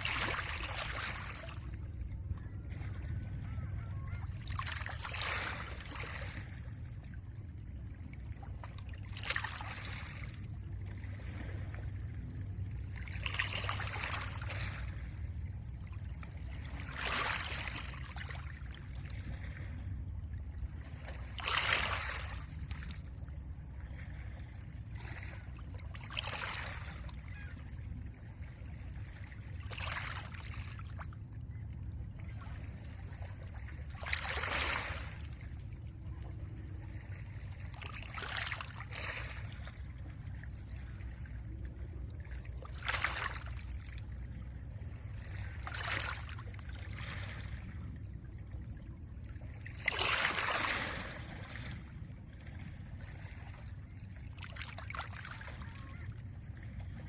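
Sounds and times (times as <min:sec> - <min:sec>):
low wind rumble: 0:00.0 - 0:17.0, 0:17.6 - 0:21.4.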